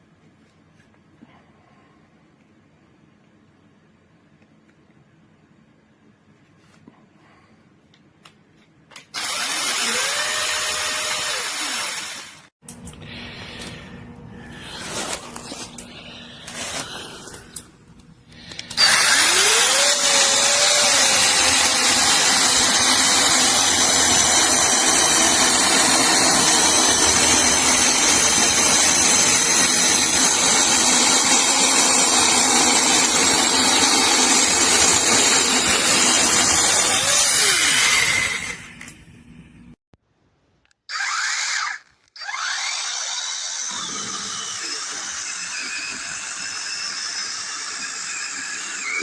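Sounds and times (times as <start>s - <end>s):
mini chainsaw motor whining: 9.2s - 12.5s, 18.5s - 38.9s, 40.9s - 49.0s.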